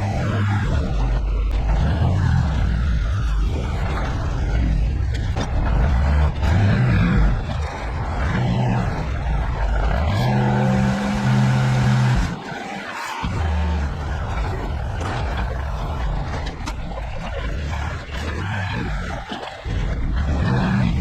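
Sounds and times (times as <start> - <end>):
vehicle engine rumbling: 3.6 - 12.4.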